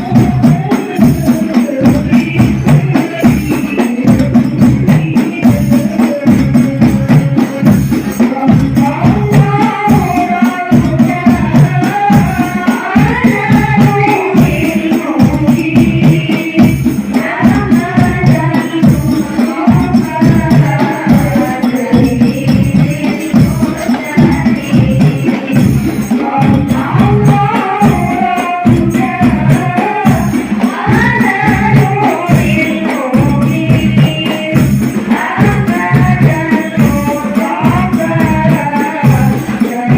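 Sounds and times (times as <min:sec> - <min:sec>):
frame drums and jingles: 0:00.0 - 0:39.9.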